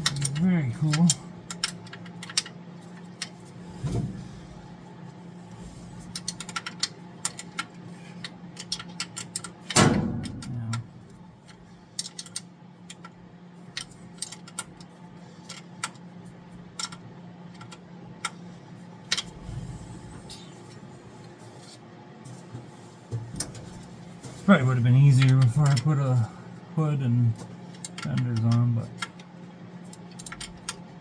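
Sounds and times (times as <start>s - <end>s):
low hum: 0.0s - 15.4s.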